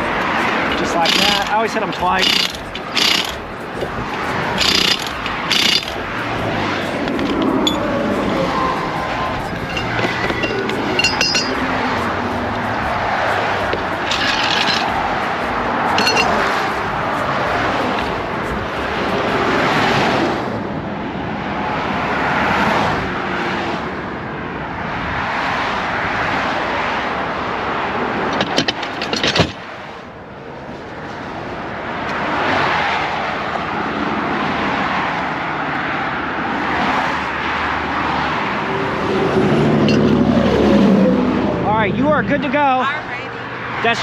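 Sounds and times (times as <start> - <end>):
sharp clicks and clatter: 0.0 - 8.0, 9.3 - 12.2, 13.6 - 16.8
highway traffic passing: 0.0 - 44.0.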